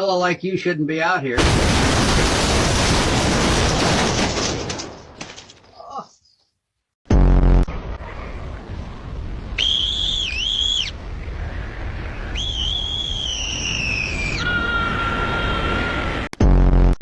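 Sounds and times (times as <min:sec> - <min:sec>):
high whistling tones: 0:09.6 - 0:11.0, 0:12.1 - 0:16.3.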